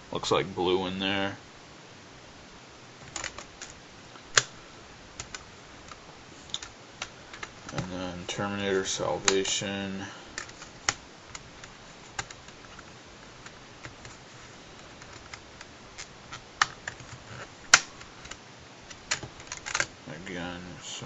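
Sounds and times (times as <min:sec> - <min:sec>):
clicks and taps of disc case: 0:05.2 - 0:08.0, 0:10.3 - 0:14.2, 0:14.8 - 0:19.9.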